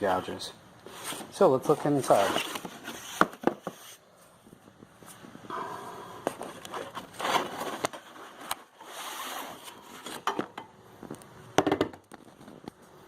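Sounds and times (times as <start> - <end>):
cardboard rustling and scraping: 0.9 - 4.3, 6.3 - 11.2.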